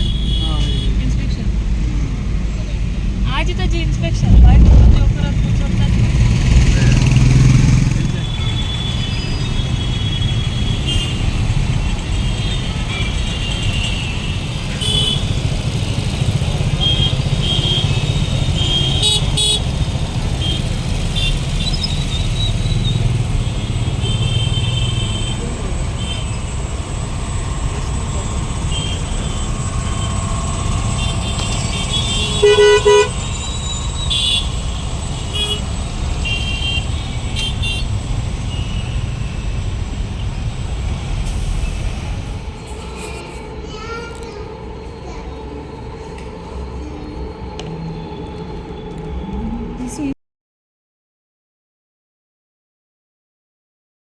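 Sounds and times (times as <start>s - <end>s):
vehicle horn toots: 0.0s - 1.2s, 4.1s - 26.8s, 27.9s - 42.0s
road traffic rumble: 0.0s - 50.2s.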